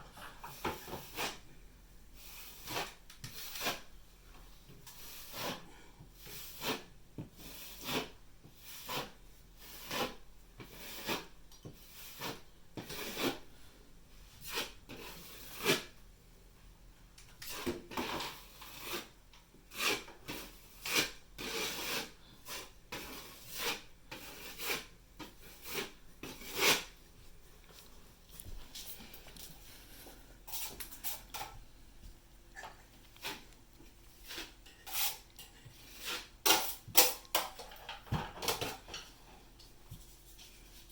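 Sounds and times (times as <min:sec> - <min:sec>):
tools scraping and rubbing: 0:17.4 - 0:27.0, 0:27.6 - 0:31.6, 0:32.5 - 0:39.2.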